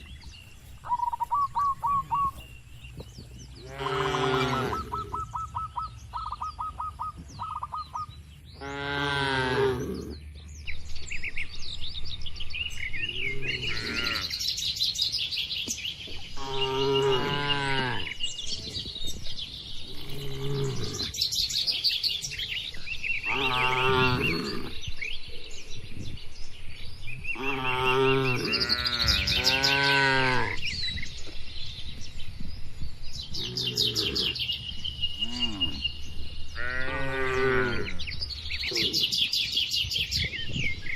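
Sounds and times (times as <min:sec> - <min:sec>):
birds chirping: 0:00.0 - 0:40.9
cattle mooing: 0:03.6 - 0:05.1, 0:23.3 - 0:24.8.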